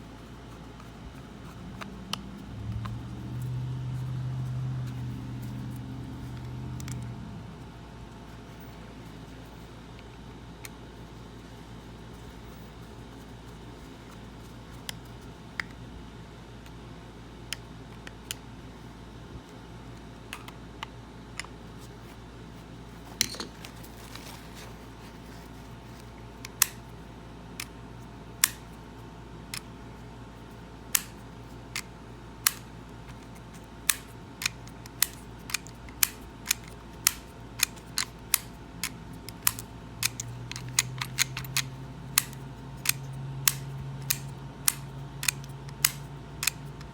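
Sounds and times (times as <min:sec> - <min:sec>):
low hum: 0:00.0 - 0:09.8
metallic clicks of lock: 0:33.9 - 0:46.8.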